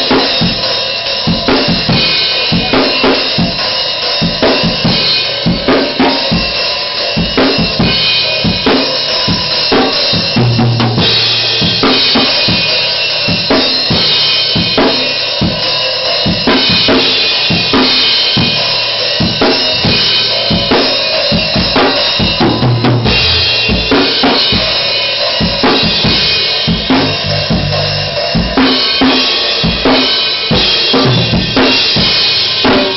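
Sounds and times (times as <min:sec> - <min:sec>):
drum kit played fast: 0:00.0 - 0:32.9
low held notes: 0:27.0 - 0:28.5.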